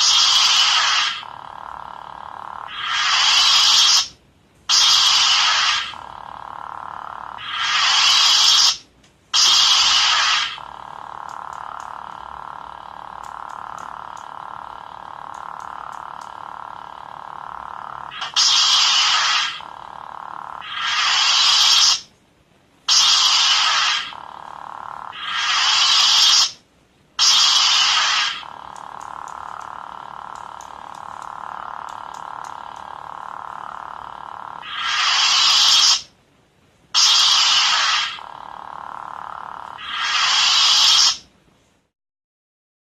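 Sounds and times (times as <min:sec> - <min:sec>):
crackling lightsaber blade: 0:00.0 - 0:06.1, 0:07.4 - 0:08.8, 0:09.4 - 0:14.6, 0:18.1 - 0:19.8, 0:20.6 - 0:22.1, 0:22.9 - 0:24.2, 0:25.1 - 0:26.6, 0:27.2 - 0:33.0, 0:34.1 - 0:36.1, 0:37.0 - 0:38.3, 0:39.7 - 0:41.3
lightsaber idle hum: 0:00.0 - 0:22.1, 0:22.8 - 0:41.3.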